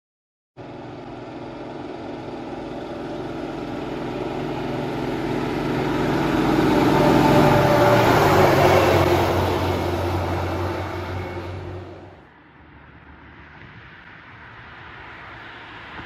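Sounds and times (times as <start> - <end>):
vehicle engine running: 0.6 - 12.3.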